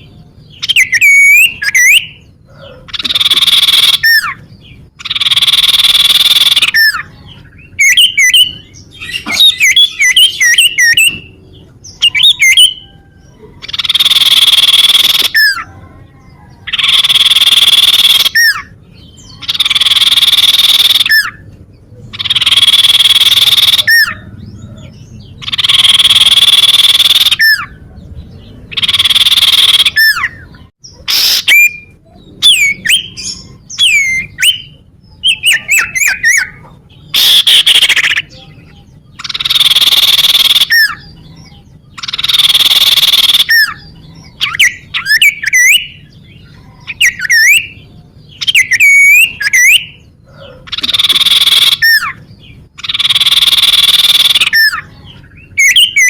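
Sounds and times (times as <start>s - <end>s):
bird harsh buzzy calls: 0.0s - 15.7s, 16.6s - 56.0s
bird whistled notes: 0.6s - 2.2s, 12.0s - 15.6s.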